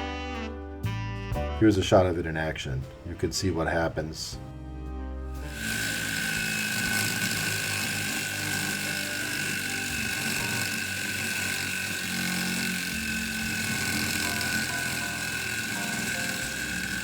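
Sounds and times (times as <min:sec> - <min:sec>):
dust collector motor running: 0:05.4 - 0:17.0.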